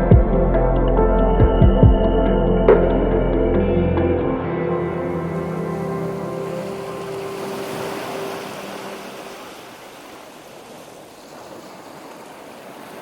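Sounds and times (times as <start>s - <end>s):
soundtrack music: 0.0s - 9.1s
ocean waves washing: 2.7s - 13.0s.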